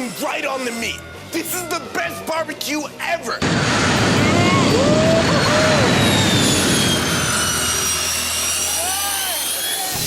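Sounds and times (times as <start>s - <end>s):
jet engine roaring: 3.4s - 10.0s.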